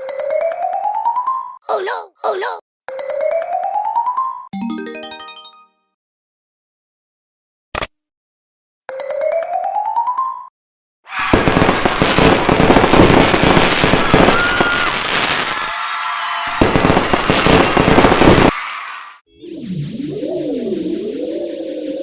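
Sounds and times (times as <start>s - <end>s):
fireworks crackling and popping: 11.3s - 15.7s, 16.6s - 18.6s
firework whistle: 13.8s - 15.6s, 16.4s - 22.0s.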